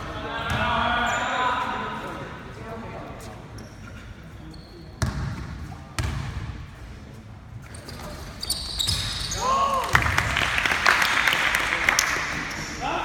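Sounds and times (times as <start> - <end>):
sneakers squeaking: 0.4 - 2.2, 3.2 - 6.6, 7.6 - 10.0
basketball bouncing on gym floor: 5.0 - 6.6
crowd noise: 9.2 - 13.0.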